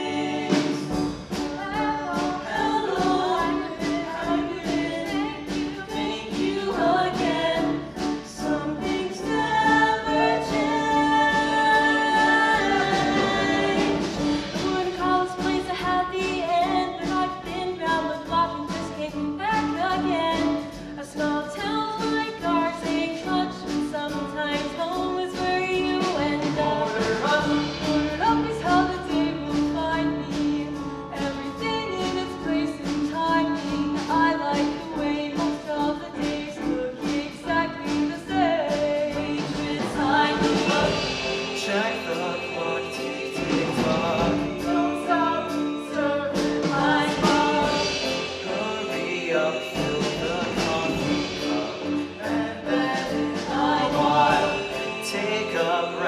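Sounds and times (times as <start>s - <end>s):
choir singing a show tune: 0.0s - 17.1s, 26.0s - 30.5s, 34.3s - 56.0s
instrumental accompaniment: 0.0s - 56.0s.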